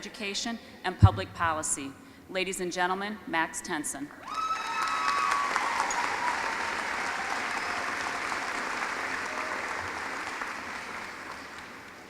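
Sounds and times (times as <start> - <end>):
audience applauding: 4.3 - 12.0.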